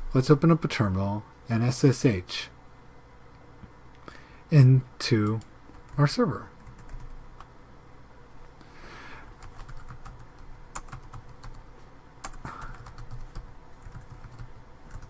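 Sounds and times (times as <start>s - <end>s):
keyboard typing: 6.6s - 7.2s, 9.3s - 11.6s, 12.2s - 15.0s.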